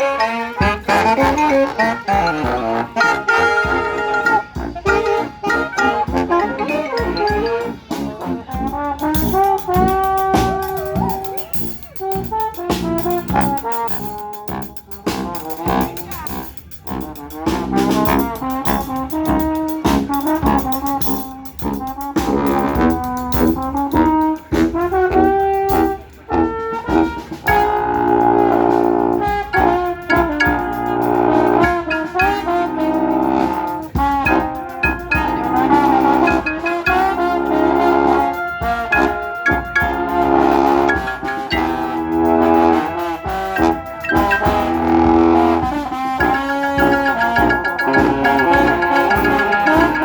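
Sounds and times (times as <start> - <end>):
brass band playing: 0.0 - 50.0
sharp percussive hits: 8.5 - 26.2, 38.5 - 45.4, 46.2 - 50.0.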